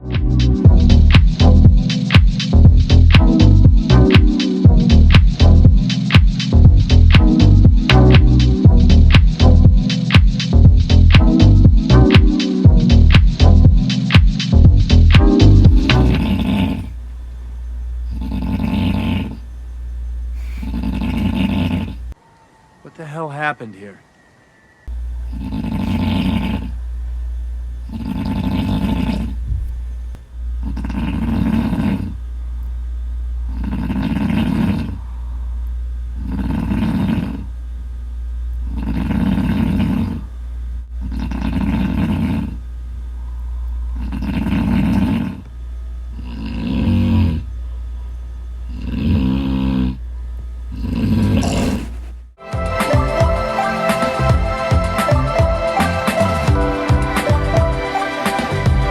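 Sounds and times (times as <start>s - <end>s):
steady low hum: 0.0s - 58.9s
loud snoring: 2.8s - 9.9s, 14.9s - 17.0s, 18.0s - 19.5s, 20.3s - 22.2s, 25.2s - 26.8s, 27.8s - 29.8s, 30.6s - 32.2s, 33.5s - 35.6s, 36.2s - 37.5s, 38.6s - 40.3s, 41.0s - 42.6s, 43.2s - 45.5s, 46.1s - 47.5s, 48.7s - 50.1s, 50.7s - 52.3s, 53.3s - 58.9s.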